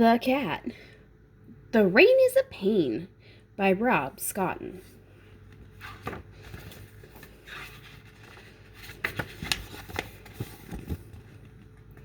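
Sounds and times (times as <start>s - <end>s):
book pages turning: 5.6s - 12.0s.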